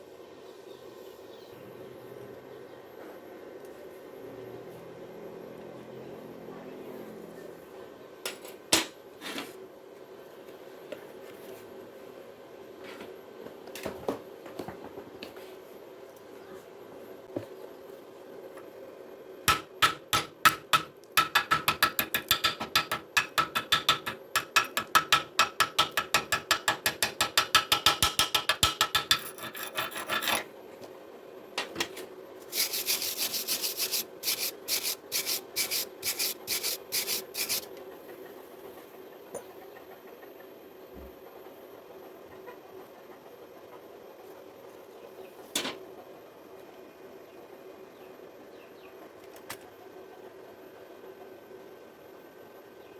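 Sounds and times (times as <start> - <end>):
hand tool scraping steel bar: 29.0 - 30.5, 32.5 - 37.7.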